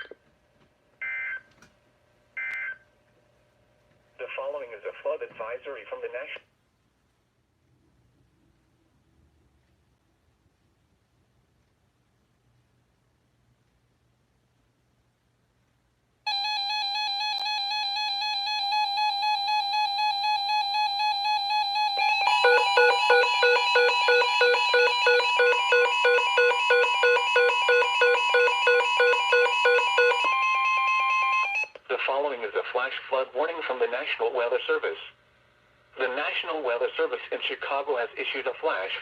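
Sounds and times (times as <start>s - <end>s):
rapid electronic beeping: 16.3s - 31.6s
buzzy synthesized held note: 16.3s - 31.7s.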